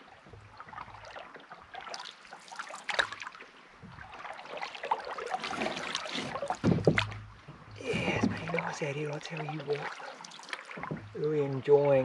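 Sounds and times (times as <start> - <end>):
paddle swishing through water: 0.0 - 12.0
small splashes and knocks: 0.0 - 12.0.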